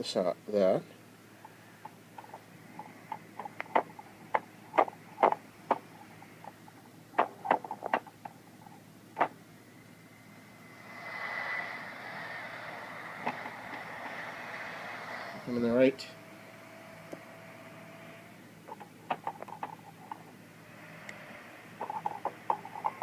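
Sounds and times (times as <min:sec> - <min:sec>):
radio clicks and pops: 0:01.8 - 0:06.6.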